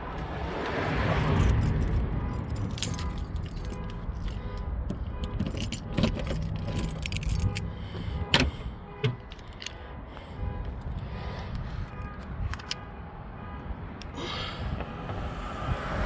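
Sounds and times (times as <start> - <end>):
metallic clinks and rattles: 0.0 - 7.8, 9.1 - 9.8.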